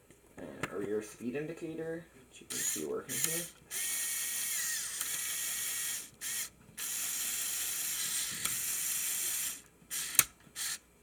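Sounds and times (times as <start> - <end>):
motor-driven gears whirring: 2.5 - 10.8.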